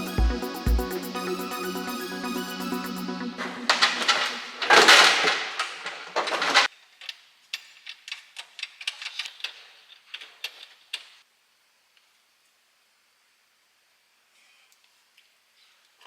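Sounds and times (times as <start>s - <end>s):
metal parts scraping clatter: 3.4s - 6.7s
metal parts clicking and tapping: 3.7s - 11.2s.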